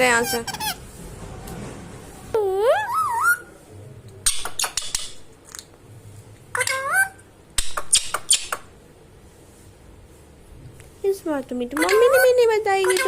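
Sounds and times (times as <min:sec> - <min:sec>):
parrot whistled call: 0:02.7 - 0:03.5.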